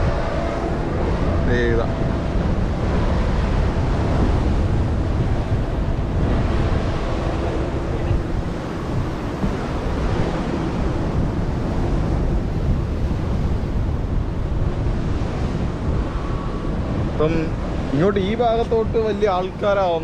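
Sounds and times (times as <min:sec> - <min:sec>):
wind buffeting microphone: 0:00.0 - 0:20.0
waves breaking against rocks: 0:00.1 - 0:16.0.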